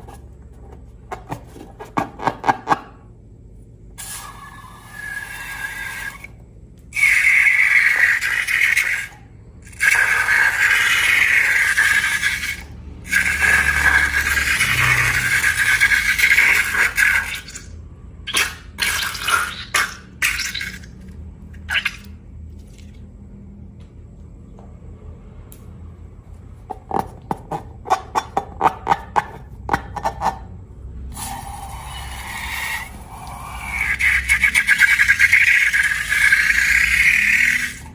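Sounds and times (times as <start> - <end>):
slime being poured and squished: 18.3 - 23.0.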